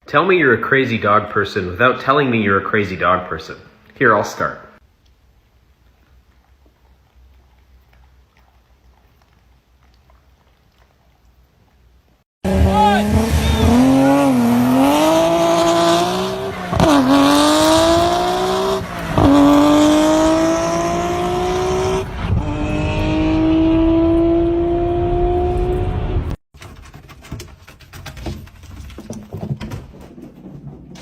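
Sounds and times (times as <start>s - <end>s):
racing car engine accelerating: 12.5s - 26.4s.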